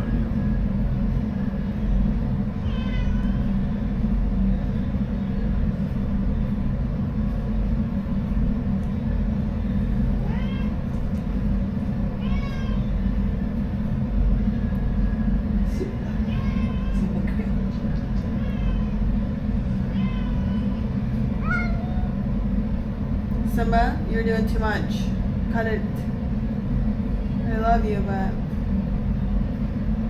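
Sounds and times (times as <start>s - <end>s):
steady low rumble: 0.0s - 30.0s
cat meowing: 2.6s - 3.5s, 10.2s - 10.9s, 12.2s - 12.9s, 16.2s - 17.2s, 18.3s - 19.0s, 19.9s - 20.8s, 21.4s - 22.2s.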